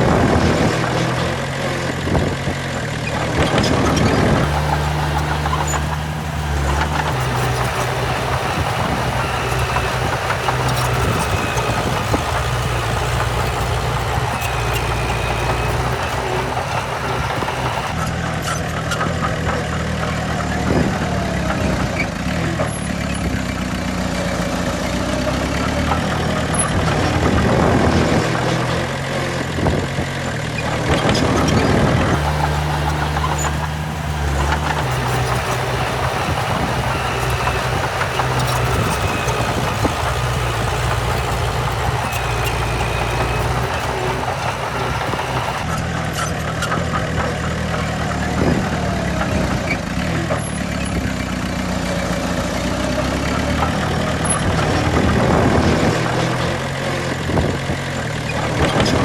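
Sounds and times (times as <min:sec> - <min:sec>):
heavy diesel machinery engines: 0:04.2 - 0:18.0, 0:32.1 - 0:45.8.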